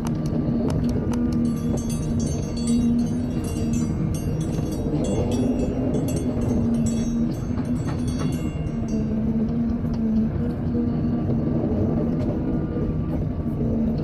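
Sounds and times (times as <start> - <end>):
excavator engine droning: 0.0 - 14.0
metallic squeaks and clinks: 1.4 - 9.1.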